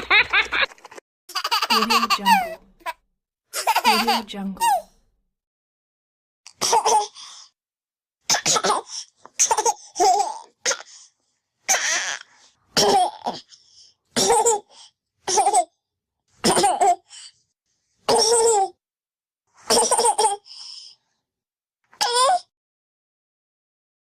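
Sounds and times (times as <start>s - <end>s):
child laughing: 0.0s - 3.0s
child coughing: 6.5s - 7.2s, 8.3s - 10.9s, 12.8s - 13.5s, 14.2s - 14.7s, 16.4s - 17.1s, 19.7s - 20.4s.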